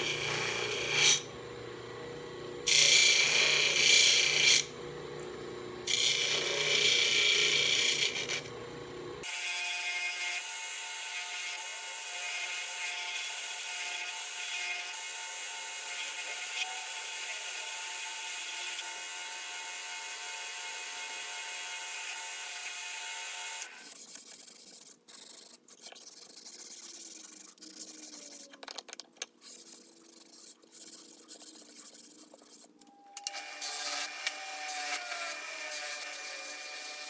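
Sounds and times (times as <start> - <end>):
small power tool running: 0.0 - 9.8, 33.2 - 37.0.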